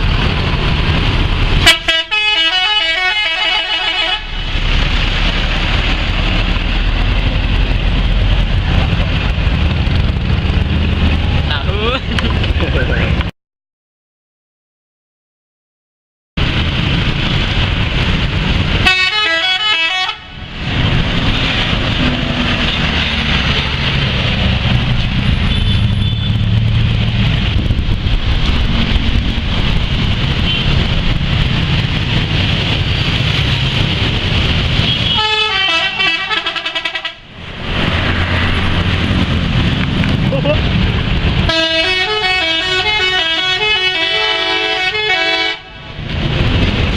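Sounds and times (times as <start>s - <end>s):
traffic noise with deep rumble: 0.0s - 13.3s, 16.4s - 46.9s
multi-tone musical bus horn: 1.6s - 4.4s, 18.8s - 20.4s, 34.8s - 37.3s, 41.5s - 45.8s.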